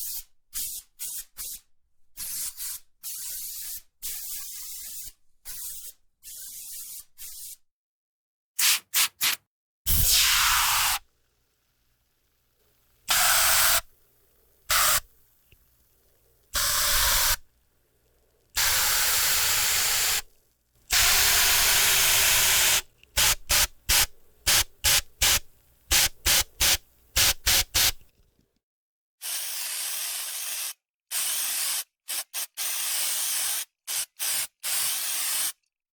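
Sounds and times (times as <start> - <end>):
pressurized spray hissing: 9.9 - 11.0, 13.0 - 13.9, 14.6 - 15.1, 16.3 - 17.4, 18.6 - 20.3, 20.9 - 28.1.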